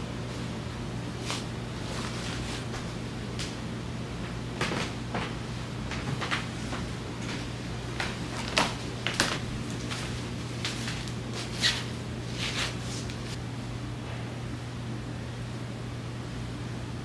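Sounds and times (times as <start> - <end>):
rustling and knocks of packing: 4.6 - 13.3.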